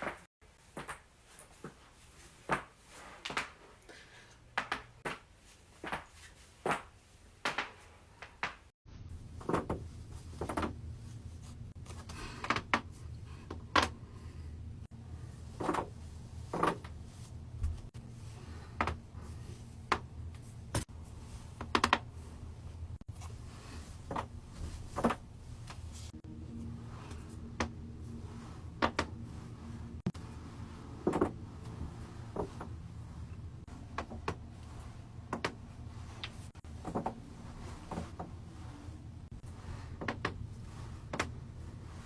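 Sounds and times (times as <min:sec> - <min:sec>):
steady low hum: 0:08.9 - 0:42.0.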